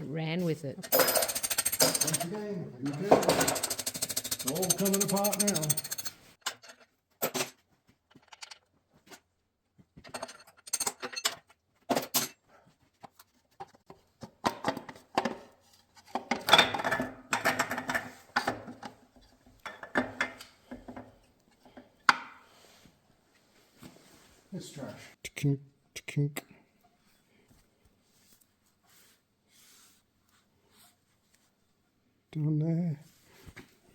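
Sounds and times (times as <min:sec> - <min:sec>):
metal parts and tools clinking: 0:00.8 - 0:08.6, 0:10.0 - 0:12.4.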